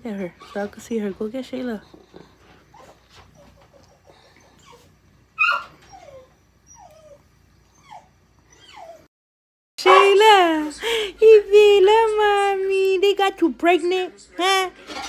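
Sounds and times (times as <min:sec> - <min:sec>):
pet whining: 0:02.0 - 0:09.1, 0:09.8 - 0:10.2.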